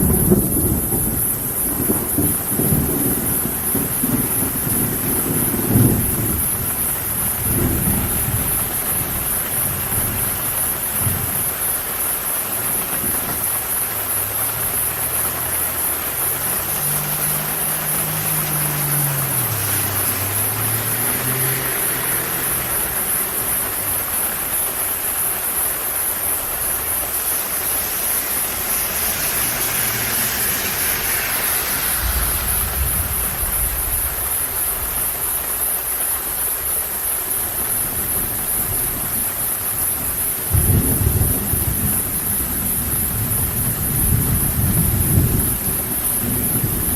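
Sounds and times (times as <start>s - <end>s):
low rolls of thunder: 0.0s - 15.1s, 16.7s - 35.8s, 37.5s - 46.9s
steady rain falling: 0.0s - 46.9s
tyre hiss on wet road: 0.0s - 46.9s
car passing: 13.1s - 35.6s.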